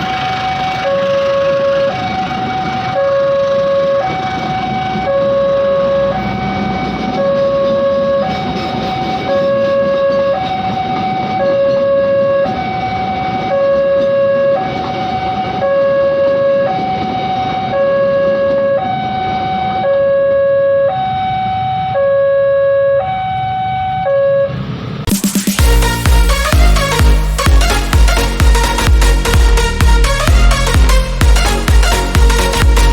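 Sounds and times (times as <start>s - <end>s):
two-tone crossing siren: 0.0s - 32.9s
low rumble: 25.0s - 32.9s.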